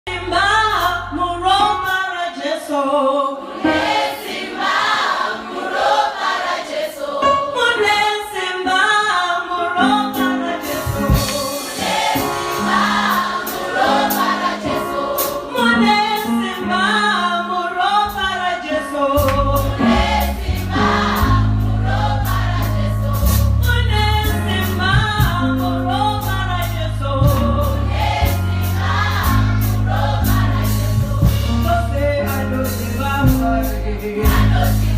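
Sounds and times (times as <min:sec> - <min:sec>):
choir singing gospel music: 0:01.8 - 0:34.9
deep bass line: 0:19.2 - 0:34.9.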